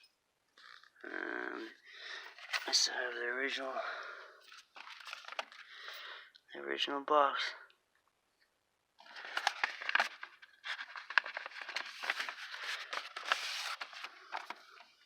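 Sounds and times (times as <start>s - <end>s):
packaging rustling and crinkling: 4.5s - 5.7s, 9.0s - 15.0s.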